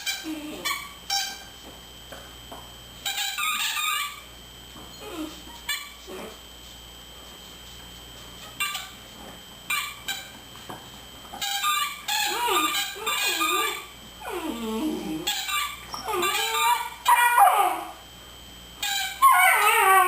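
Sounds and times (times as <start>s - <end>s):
squeaky toy squeaks: 11.4s - 13.8s, 15.3s - 17.0s
puppy squealing and whining: 11.5s - 18.0s, 18.8s - 20.0s.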